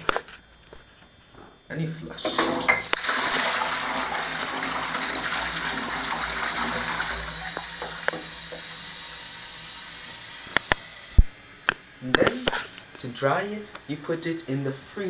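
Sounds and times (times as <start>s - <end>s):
toilet flushing: 2.2s - 11.2s.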